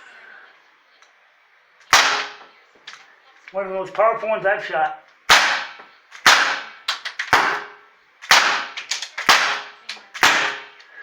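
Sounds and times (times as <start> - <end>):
air revolver shots: 1.9 - 2.5, 5.3 - 10.8.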